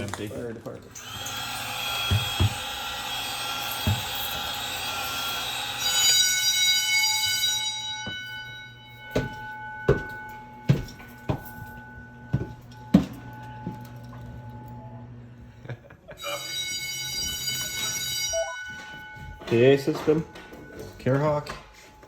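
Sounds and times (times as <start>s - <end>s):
fire alarm horns blaring: 1.0s - 15.1s, 16.1s - 22.0s.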